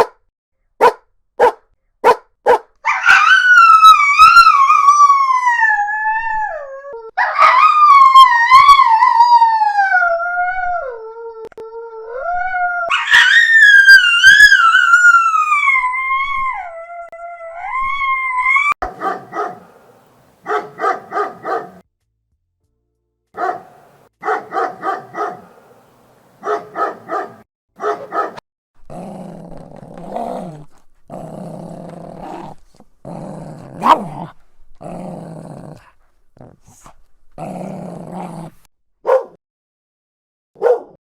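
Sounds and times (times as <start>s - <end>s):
dog barking: 0.8s - 2.7s, 18.8s - 21.8s, 23.4s - 28.4s, 33.8s - 34.3s, 39.0s - 39.4s, 40.6s - 41.0s
dog yelping: 0.8s - 4.6s, 12.9s - 15.2s, 18.5s - 19.7s, 20.5s - 21.8s, 23.4s - 25.6s, 26.4s - 28.4s, 32.2s - 34.3s, 39.1s - 39.4s
dog growling: 28.8s - 38.7s.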